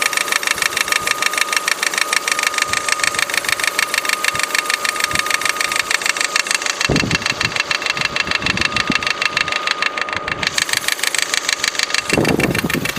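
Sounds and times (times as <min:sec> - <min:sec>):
petrol engine idling with clatter: 0:00.0 - 0:12.9
pulley striking engine block: 0:00.0 - 0:12.9.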